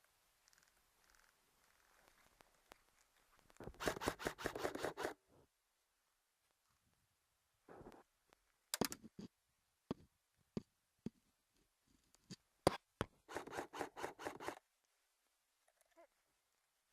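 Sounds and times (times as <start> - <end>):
rasping strokes: 3.6 - 5.2, 13.3 - 14.6.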